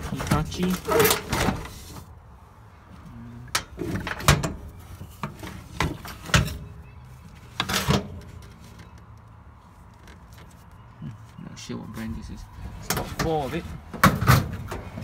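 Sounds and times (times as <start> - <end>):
tool cases knocking and clunking: 0.0 - 1.7, 3.6 - 6.8, 12.8 - 15.0.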